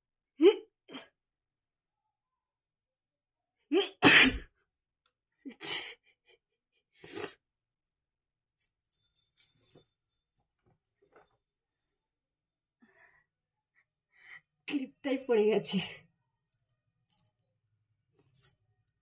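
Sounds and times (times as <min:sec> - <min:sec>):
woman sneezing: 0:03.8 - 0:04.4.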